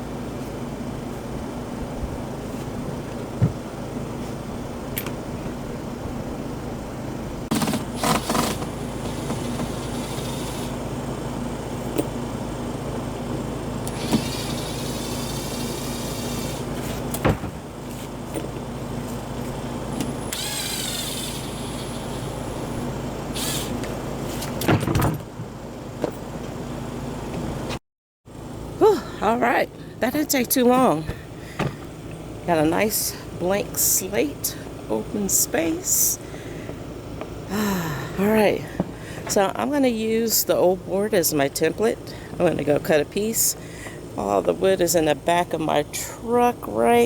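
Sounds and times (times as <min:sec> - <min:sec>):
steady low hum: 0:00.0 - 0:47.0
wooden boards knocking and banging: 0:17.2 - 0:17.7.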